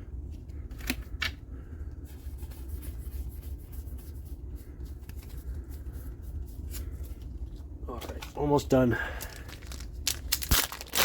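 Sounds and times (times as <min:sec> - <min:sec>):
steady low hum: 0:00.0 - 0:11.0
trading cards being handled: 0:09.2 - 0:11.0.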